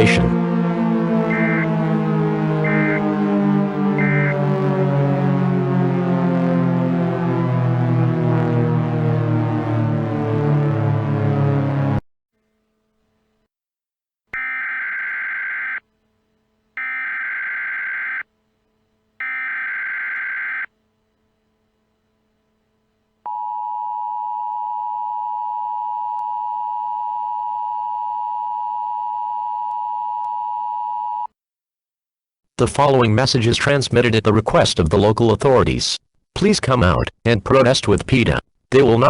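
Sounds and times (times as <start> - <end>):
steady two-tone alarm: 0.7 - 7.0, 14.4 - 15.8, 16.8 - 18.3, 19.2 - 20.7
digital data tone bursts: 1.2 - 2.0, 2.6 - 3.2, 4.0 - 4.5, 16.8 - 18.2.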